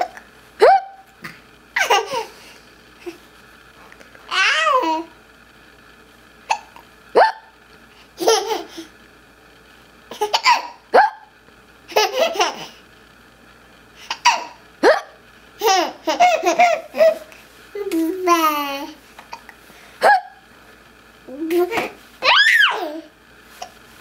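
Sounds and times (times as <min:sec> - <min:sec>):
child hiccupping: 0:06.5 - 0:07.5.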